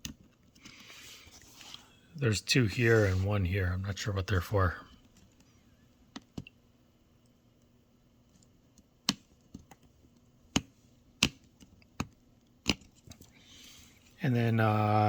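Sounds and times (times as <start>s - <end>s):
hands clicking and tapping laptop parts: 0.0s - 0.9s, 6.1s - 6.6s, 8.4s - 13.3s.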